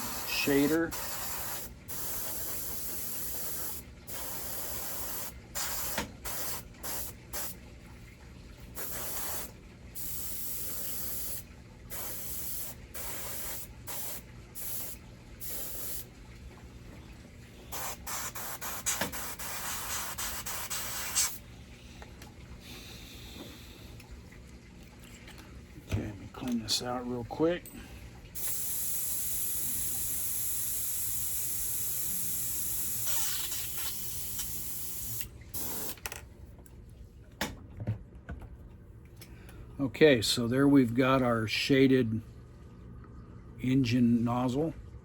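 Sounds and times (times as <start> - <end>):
airbrush air hiss: 0.0 - 7.5, 8.8 - 16.0, 17.7 - 21.4, 28.4 - 36.0.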